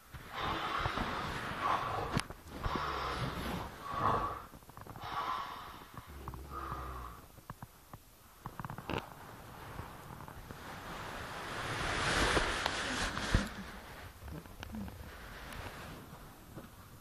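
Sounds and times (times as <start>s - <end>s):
man snoring heavily: 0.3s - 7.2s.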